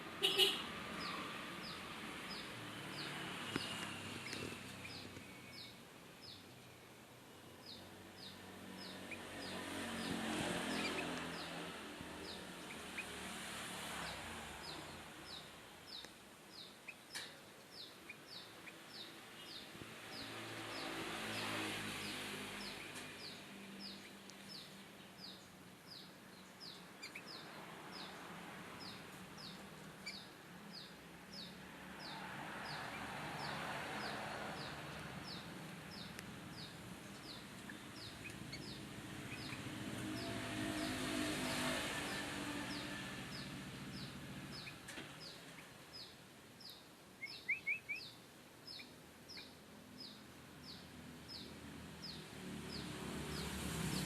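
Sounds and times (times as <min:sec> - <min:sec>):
bird chirping: 0:00.2 - 0:54.0.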